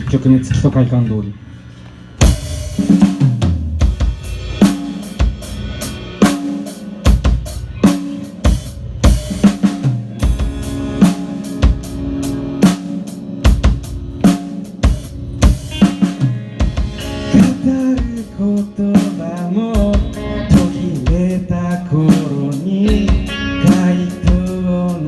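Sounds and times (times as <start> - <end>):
drum kit beat: 2.2 - 25.0
sustained instrument notes: 10.2 - 19.0.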